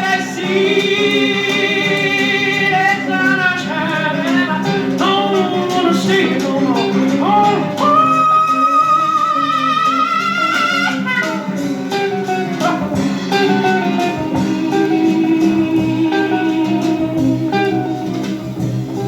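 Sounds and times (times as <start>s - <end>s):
plucked guitar notes: 0.0s - 19.0s
wavering held guitar note: 7.1s - 19.0s
steady bass: 11.4s - 19.0s.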